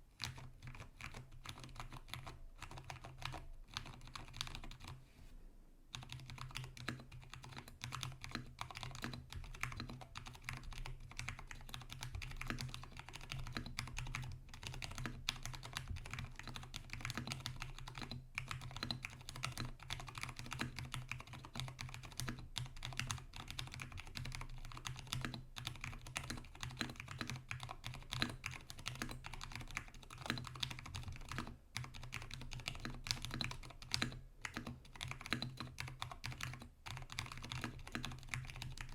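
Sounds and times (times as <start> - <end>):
fast typing on mechanical keyboard: 0.2 - 5.0, 5.9 - 38.9.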